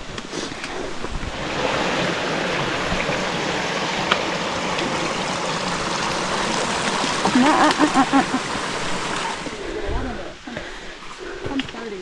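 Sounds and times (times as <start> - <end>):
stream rushing over rocks: 1.3 - 9.7.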